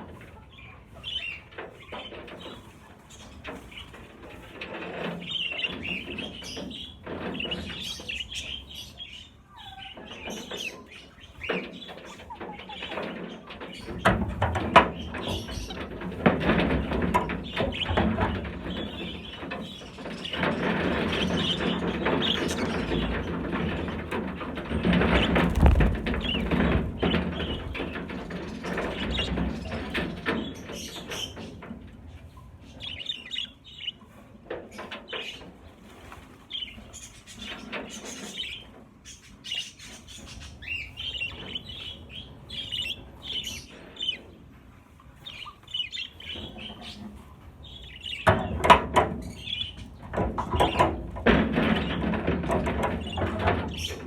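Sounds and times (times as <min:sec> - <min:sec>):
wings flapping: 0:19.8 - 0:31.5.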